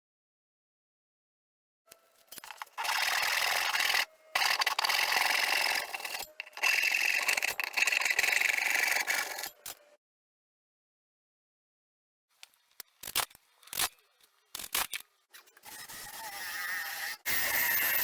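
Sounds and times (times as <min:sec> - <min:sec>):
wood rasping: 0:02.8 - 0:09.5.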